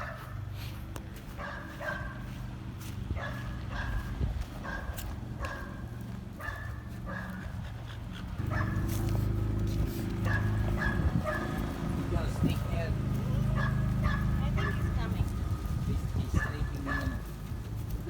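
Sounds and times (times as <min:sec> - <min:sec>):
dog barking in yips: 0:01.4 - 0:02.2, 0:03.2 - 0:05.8, 0:06.4 - 0:07.4, 0:08.4 - 0:09.0, 0:10.2 - 0:11.6, 0:13.4 - 0:14.9, 0:16.4 - 0:17.3.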